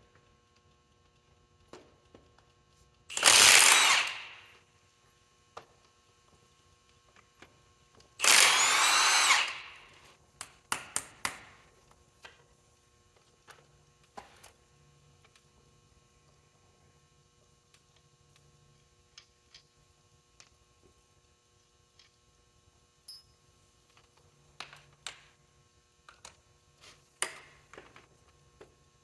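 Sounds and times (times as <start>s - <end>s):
power tool motor whine: 3.1s - 4.5s, 8.2s - 10.0s.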